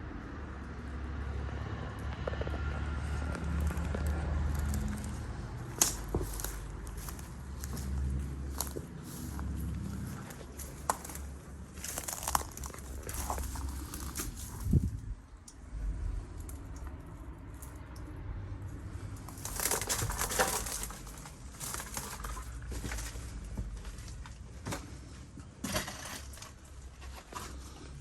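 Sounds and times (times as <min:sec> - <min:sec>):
low rumble: 0:02.5 - 0:19.2
footsteps crunching on loose ground: 0:04.6 - 0:15.1.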